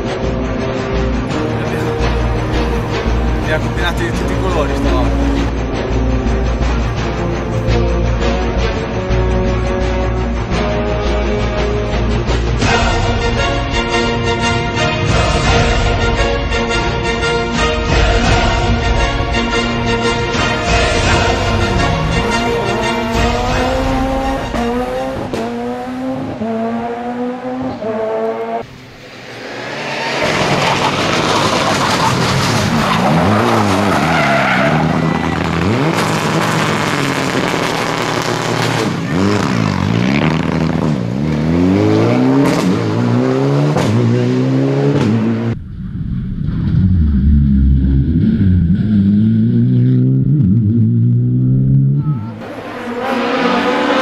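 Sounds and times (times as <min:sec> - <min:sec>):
music: 0:00.0 - 0:25.4
rally car engines revving: 0:00.0 - 0:54.0
deep car engine revving: 0:20.6 - 0:28.6, 0:34.8 - 0:54.0.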